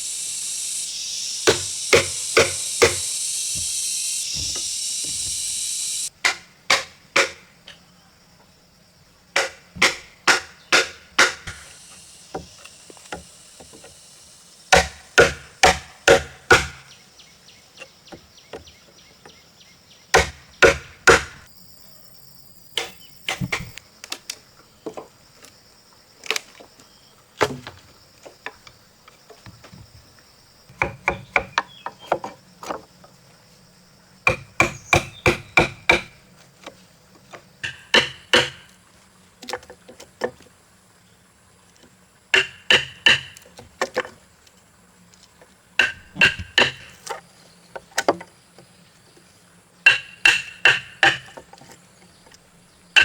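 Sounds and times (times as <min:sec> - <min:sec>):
hand tool striking timber: 0:01.4 - 0:05.4, 0:06.2 - 0:07.4, 0:09.4 - 0:11.7, 0:14.7 - 0:16.9, 0:20.2 - 0:21.4, 0:30.7 - 0:32.8, 0:34.2 - 0:36.2, 0:37.6 - 0:38.7, 0:42.3 - 0:44.1, 0:45.8 - 0:47.2, 0:49.8 - 0:51.6.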